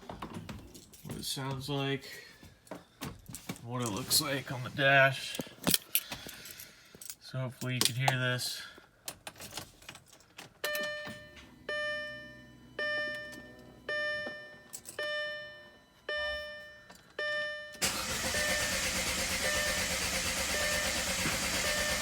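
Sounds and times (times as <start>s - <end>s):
dashboard warning chime: 10.6s - 18.8s, 19.4s - 22.0s
starter cranking engine: 17.8s - 22.0s.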